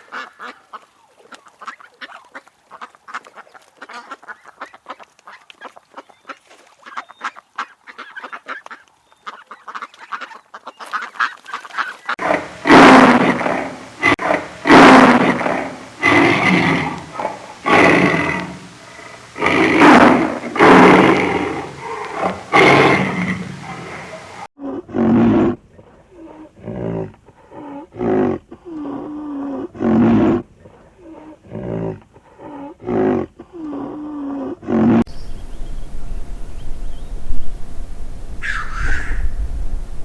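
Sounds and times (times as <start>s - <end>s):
short animal calls bending pitch: 35.1s - 40.0s
large animal calling loudly: 38.4s - 39.9s.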